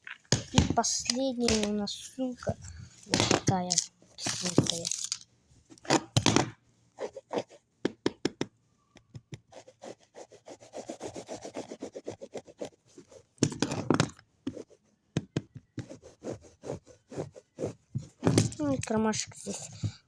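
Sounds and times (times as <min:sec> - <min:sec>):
rubbing and scratching on handbag: 0:00.1 - 0:06.2, 0:06.9 - 0:07.8, 0:09.3 - 0:20.0
taps on handbag: 0:07.8 - 0:09.4.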